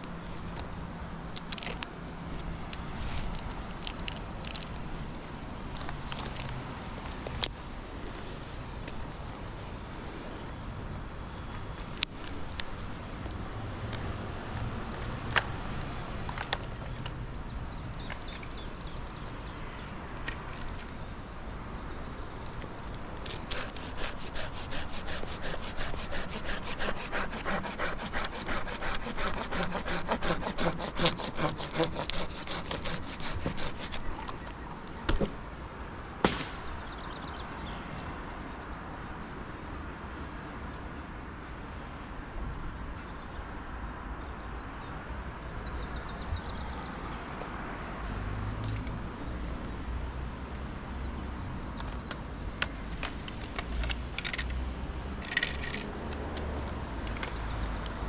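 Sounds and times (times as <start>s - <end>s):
hand saw cutting wood: 23.2s - 34.6s.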